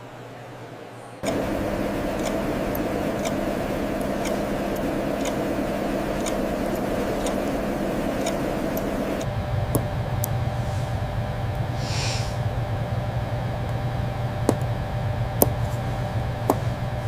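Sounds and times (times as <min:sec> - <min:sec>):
sharp light clicks: 0:01.2 - 0:10.3
steady low hum: 0:01.2 - 0:17.0
brief hiss: 0:11.8 - 0:12.4.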